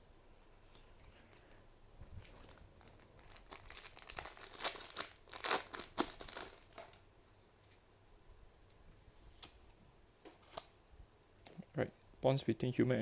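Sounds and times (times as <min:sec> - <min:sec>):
foil wrapper crinkling: 0:02.2 - 0:07.0.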